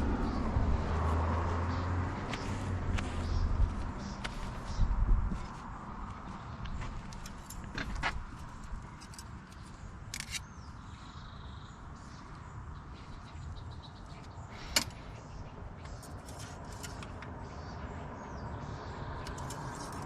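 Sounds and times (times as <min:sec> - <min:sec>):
light metallic clicks and clinks: 0:19.2 - 0:20.0.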